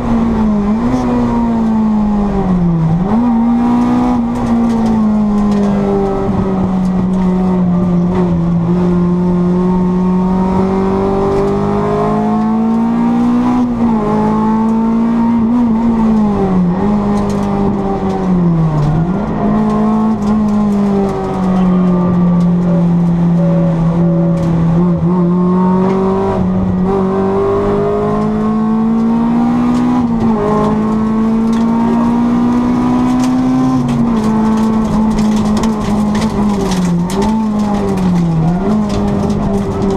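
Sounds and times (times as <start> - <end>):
car engine revving high: 0.0 - 39.9.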